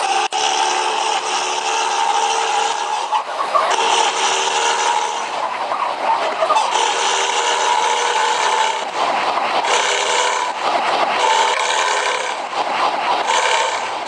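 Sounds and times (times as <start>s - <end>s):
multi-tone bus horn: 0.0s - 5.4s, 6.4s - 8.9s, 9.6s - 10.6s, 11.2s - 12.4s, 13.2s - 14.0s.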